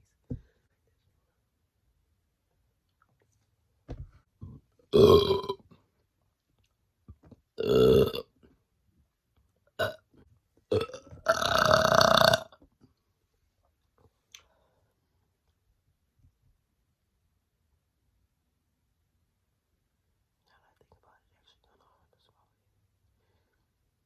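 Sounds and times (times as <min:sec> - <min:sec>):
woman burping: 0:04.9 - 0:05.6, 0:07.6 - 0:08.3, 0:09.8 - 0:10.0, 0:10.7 - 0:12.6.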